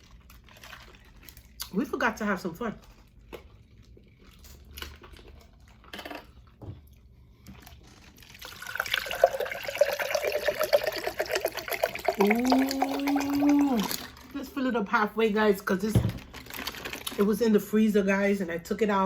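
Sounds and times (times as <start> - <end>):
drink pouring into glass: 8.2 - 14.4.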